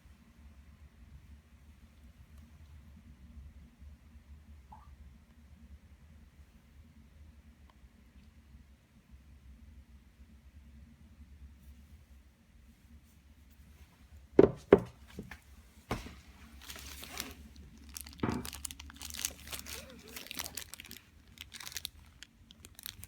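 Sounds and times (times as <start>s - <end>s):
sharp knocks: 14.4s - 15.3s
packaging crinkling: 15.9s - 23.0s.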